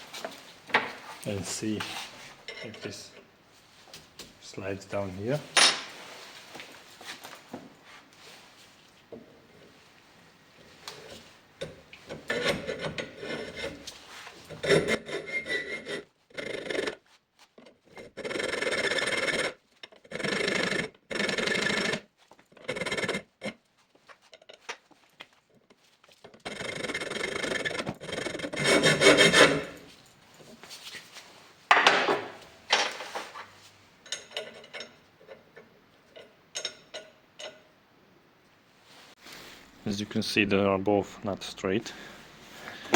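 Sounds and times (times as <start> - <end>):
hand file rasping on metal: 12.1 - 17.0, 17.8 - 23.6, 26.3 - 29.9.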